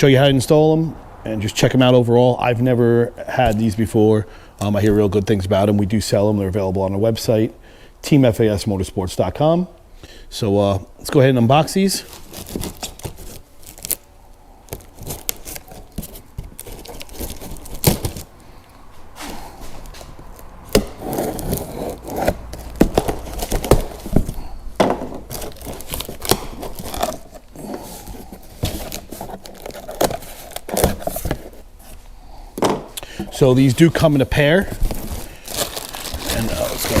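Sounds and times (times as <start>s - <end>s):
cardboard and packing rustling: 11.9s - 37.0s
tape tearing: 12.0s - 14.1s, 14.7s - 18.3s, 19.8s - 24.5s, 25.2s - 31.7s, 34.7s - 37.0s
knocks and scrapes: 19.1s - 32.9s.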